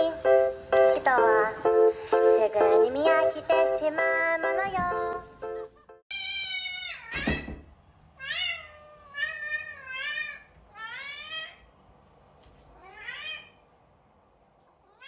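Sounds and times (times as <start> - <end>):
cat meowing: 6.1 - 7.5, 8.2 - 11.7, 12.7 - 13.6.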